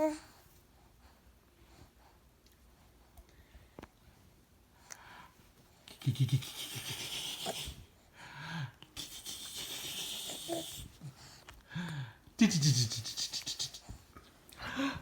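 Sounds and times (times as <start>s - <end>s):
wheezing hissing breaths: 6.2s - 12.2s.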